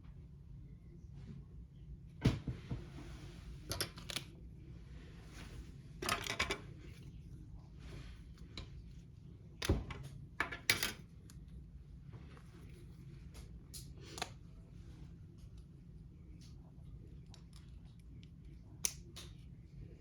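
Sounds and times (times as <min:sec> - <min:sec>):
plastic parts clicking and rattling: 0:06.0 - 0:06.6.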